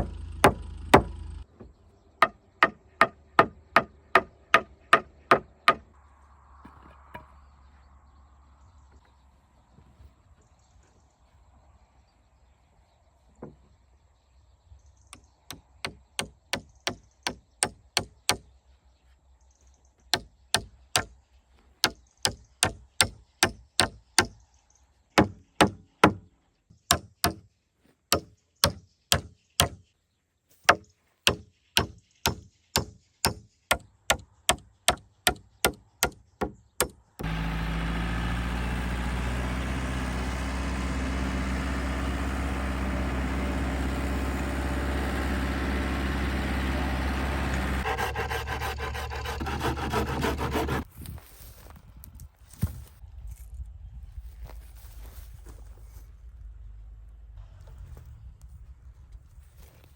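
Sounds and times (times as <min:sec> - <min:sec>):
sharp strikes on wood: 0:00.0 - 0:01.2, 0:02.2 - 0:05.8, 0:20.2 - 0:21.1, 0:25.2 - 0:26.2, 0:26.9 - 0:27.4, 0:28.1 - 0:29.8, 0:30.7 - 0:37.4
loud machine noise with low hum: 0:37.2 - 0:50.8.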